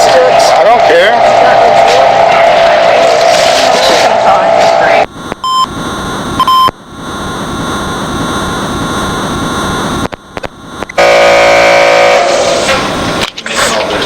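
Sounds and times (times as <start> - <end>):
loud harsh buzz: 0.0 - 14.0
short beep: 5.4 - 5.7, 6.4 - 6.7.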